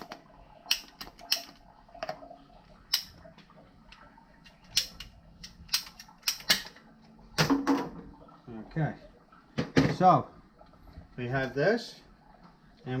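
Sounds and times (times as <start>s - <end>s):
plumbing pipe and tools clicking: 0.0s - 2.2s, 2.9s - 8.0s.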